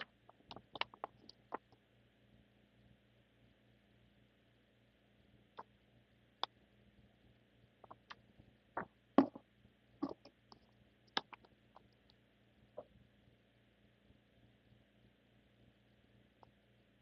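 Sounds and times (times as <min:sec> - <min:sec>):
small objects clicking and knocking: 0:00.0 - 0:01.7, 0:09.2 - 0:09.4, 0:10.0 - 0:10.4, 0:11.1 - 0:12.0
faint steady hum: 0:00.0 - 0:17.0.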